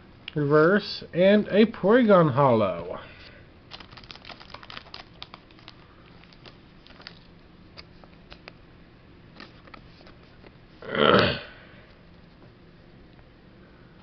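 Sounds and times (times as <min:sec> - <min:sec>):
cards and wrappers crinkling: 0:03.7 - 0:08.6.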